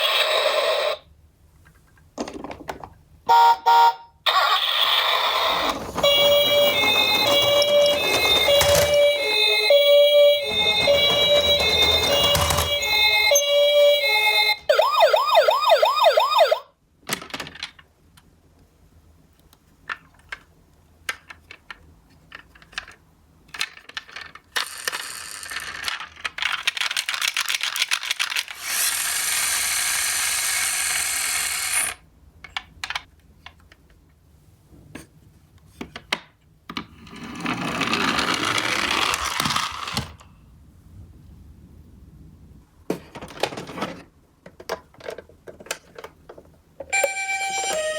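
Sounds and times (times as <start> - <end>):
toy cars clicking and clattering: 4.3 - 9.2, 10.4 - 13.1, 19.8 - 34.0, 36.8 - 40.3, 43.2 - 47.9
toy electronic siren wailing: 4.3 - 16.7, 47.0 - 47.9.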